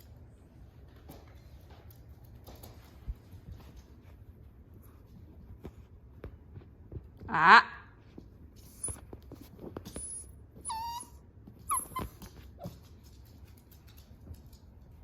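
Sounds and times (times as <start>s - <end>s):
puppy whining: 8.6s - 13.0s.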